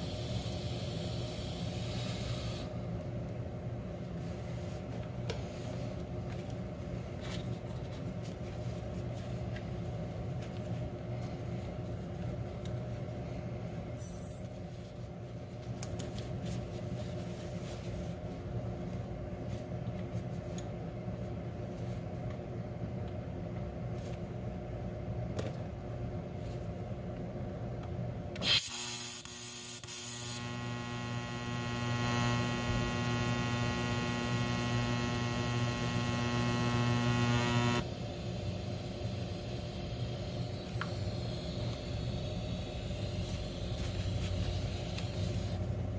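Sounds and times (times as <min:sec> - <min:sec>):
welder electrical hum: 0:00.0 - 0:45.9.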